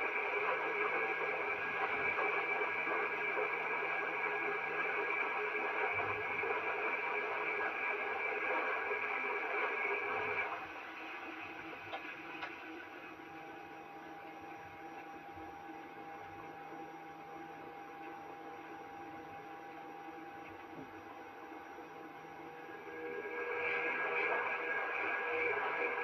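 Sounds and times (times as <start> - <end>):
washing machine humming: 0.0 - 26.0
steady tones: 20.7 - 26.0.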